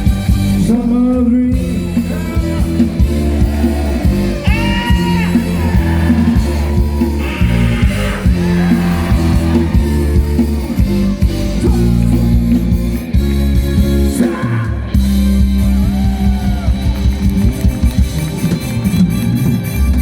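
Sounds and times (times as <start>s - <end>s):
live band with guitar: 0.0s - 20.0s.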